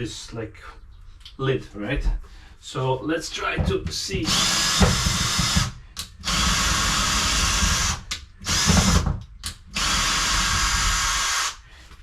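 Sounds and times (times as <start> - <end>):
power drill running: 4.2 - 9.1, 9.8 - 11.6.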